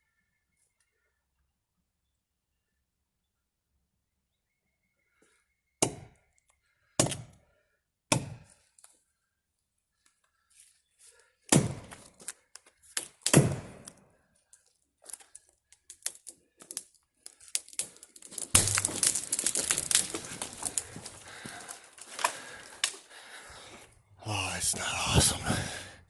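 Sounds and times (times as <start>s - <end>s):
axe striking wood: 5.8s - 6.2s, 7.0s - 7.4s, 8.1s - 8.5s, 11.5s - 12.1s, 13.0s - 13.9s
wood cracking: 11.1s - 23.9s
crash of falling branches: 17.4s - 23.1s.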